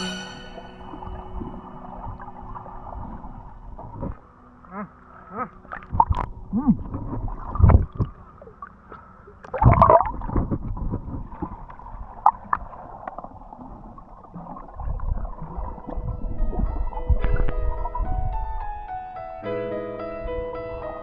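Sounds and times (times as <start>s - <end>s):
water gurgling and bubbling: 5.4s - 18.5s.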